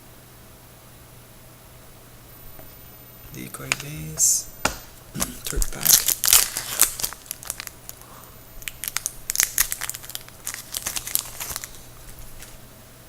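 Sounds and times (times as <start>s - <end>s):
wrapper being torn and crinkled: 5.2s - 12.6s.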